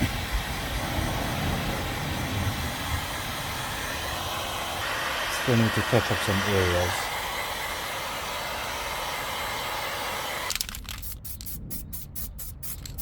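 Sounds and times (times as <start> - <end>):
short spray puffs: 0.0 - 13.0
spray-paint can hissing: 4.4 - 13.0.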